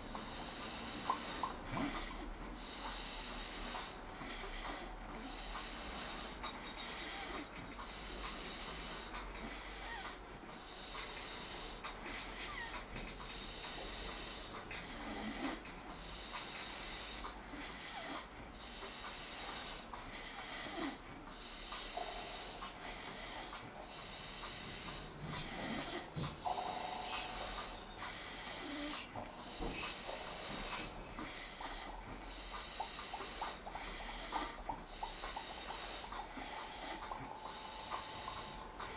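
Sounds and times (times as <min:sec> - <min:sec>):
hissing breath: 0:00.0 - 0:38.9
man snoring: 0:13.4 - 0:38.8.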